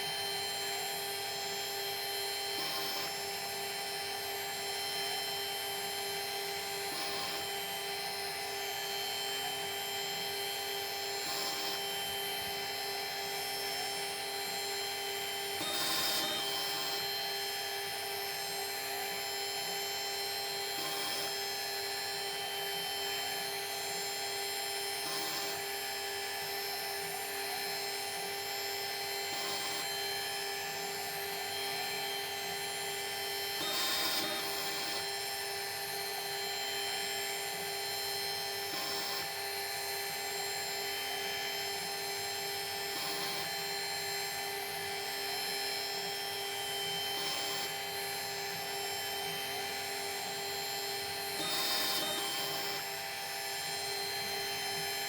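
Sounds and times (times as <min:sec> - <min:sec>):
machine tool motor whining: 0:43.5 - 0:55.0.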